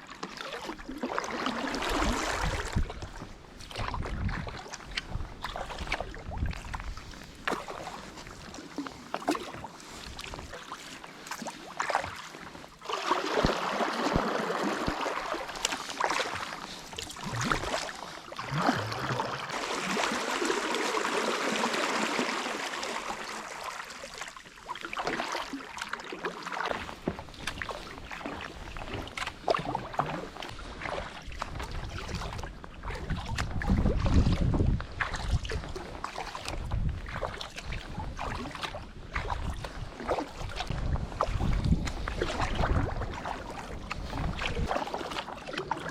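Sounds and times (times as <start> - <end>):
paddle splashing in water: 0.0 - 45.9
water washing against hull: 0.0 - 45.9
wind rumble on microphone: 1.9 - 7.5, 27.0 - 45.2.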